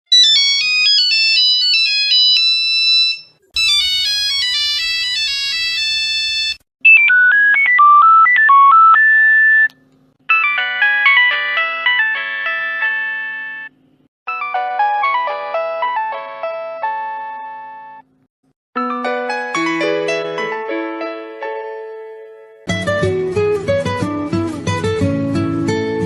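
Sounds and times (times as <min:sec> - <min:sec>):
phone ringtone melodies: 0:00.1 - 0:09.7, 0:10.3 - 0:18.0, 0:18.8 - 0:21.4.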